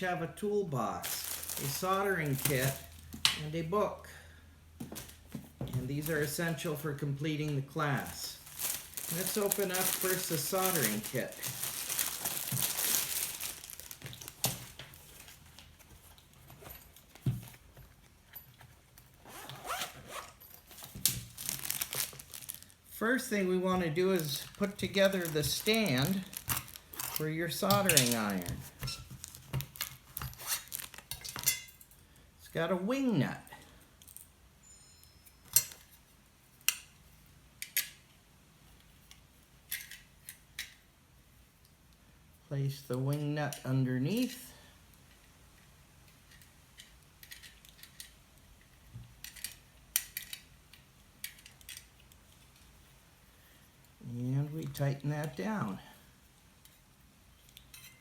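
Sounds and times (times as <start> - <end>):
scraping and rustling: 1.0 - 3.2, 8.0 - 22.8, 23.6 - 31.4
parts and packaging clicking: 1.0 - 3.5, 7.4 - 31.7, 45.0 - 52.8.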